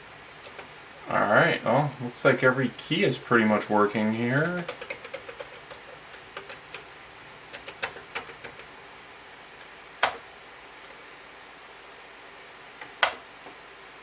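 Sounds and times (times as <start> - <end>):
keyboard keys clicking: 4.4 - 6.8, 7.5 - 8.7.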